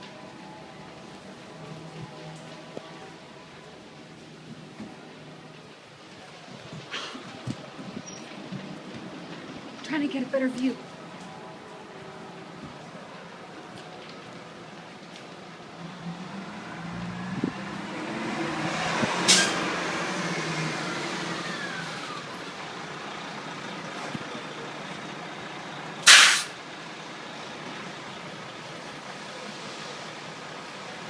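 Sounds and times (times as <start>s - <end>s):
diesel engine running: 15.6s - 29.3s
air brake hisses: 19.3s - 19.6s, 26.0s - 26.6s.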